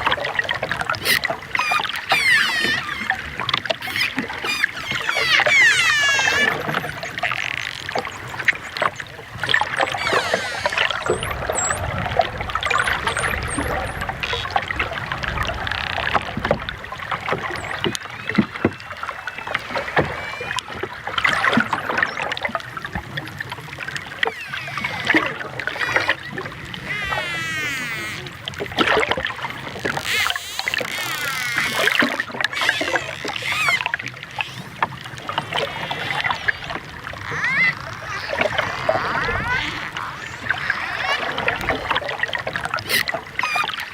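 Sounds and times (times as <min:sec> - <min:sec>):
dolphin clicks: 0:01.0 - 0:11.8, 0:24.2 - 0:41.8
dolphins whistling: 0:01.0 - 0:12.0, 0:12.6 - 0:14.5, 0:17.5 - 0:22.3, 0:24.2 - 0:28.5, 0:30.0 - 0:41.9, 0:42.8 - 0:43.9.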